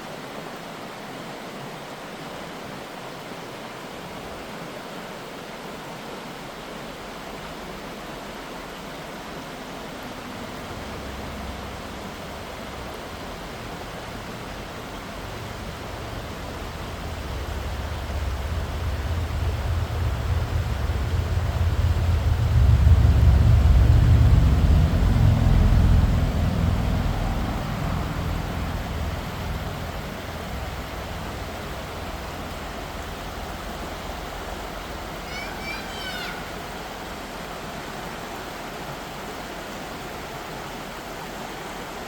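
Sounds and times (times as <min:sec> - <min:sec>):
flowing water: 0:00.0 - 0:42.0
low rumble: 0:09.8 - 0:35.3.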